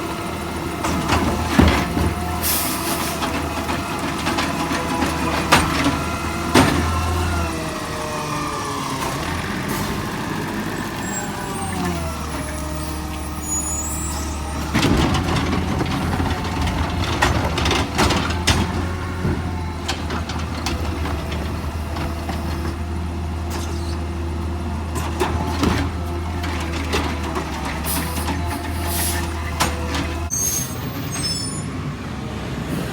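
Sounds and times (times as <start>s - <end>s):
diesel truck engine running: 0.0s - 32.9s
knocks and clatter: 0.8s - 2.4s, 14.6s - 22.8s.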